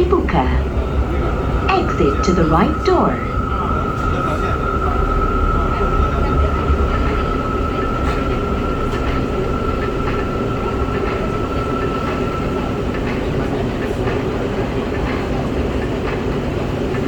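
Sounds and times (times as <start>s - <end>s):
thin high whine: 0.0s - 13.0s
train running gear rumble: 0.0s - 17.0s.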